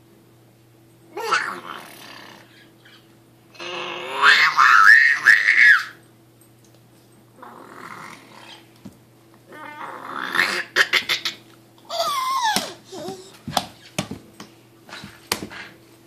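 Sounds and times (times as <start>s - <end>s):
baby squealing: 11.9s - 13.3s.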